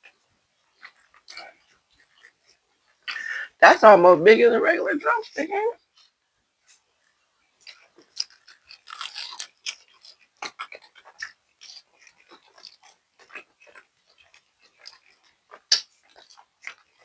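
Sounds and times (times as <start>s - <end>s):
person chewing: 0.8s - 3.6s, 5.9s - 6.8s, 7.6s - 17.0s
wet mouth clicks and smacks: 7.6s - 17.0s.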